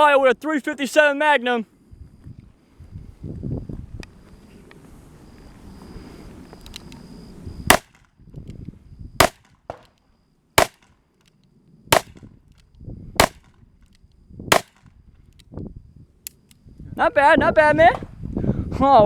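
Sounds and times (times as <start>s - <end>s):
revolver gunshots: 7.7s - 8.0s, 9.2s - 9.9s, 10.6s - 10.9s, 12.0s - 12.2s, 13.2s - 13.5s, 14.5s - 14.9s.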